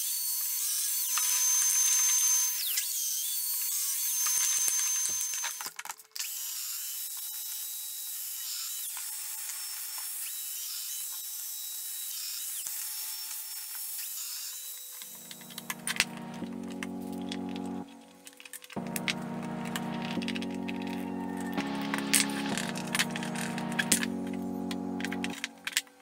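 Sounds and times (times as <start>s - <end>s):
power tool whining on wood: 0.0s - 26.0s
music: 15.0s - 26.0s.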